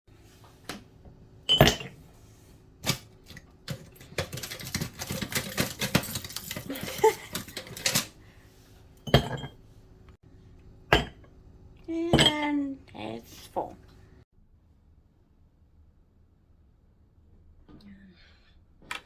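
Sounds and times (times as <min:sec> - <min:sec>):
knocks and clinks: 0:01.5 - 0:02.0, 0:03.7 - 0:08.1, 0:09.0 - 0:09.6, 0:10.9 - 0:11.3, 0:12.1 - 0:12.5.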